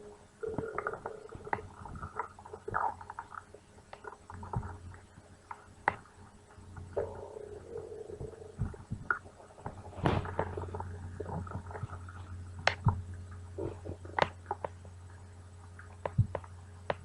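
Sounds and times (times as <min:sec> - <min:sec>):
stomach growling and gurgling: 0:00.4 - 0:05.2, 0:06.8 - 0:14.9.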